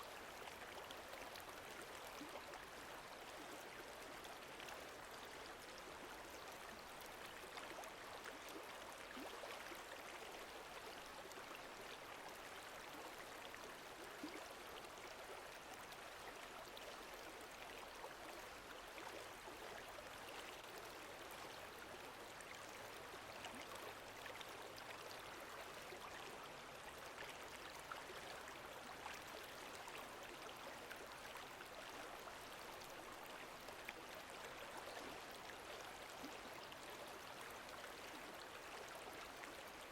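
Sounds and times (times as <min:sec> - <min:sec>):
small water splashes and drips: 0:00.0 - 0:39.9.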